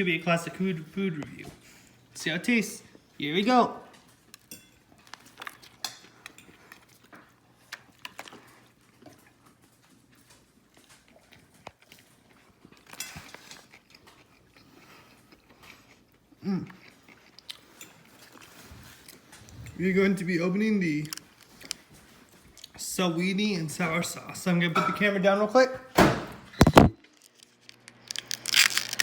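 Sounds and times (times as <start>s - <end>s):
person chewing food: 4.0s - 19.8s, 21.0s - 22.8s
person humming: 16.4s - 16.7s.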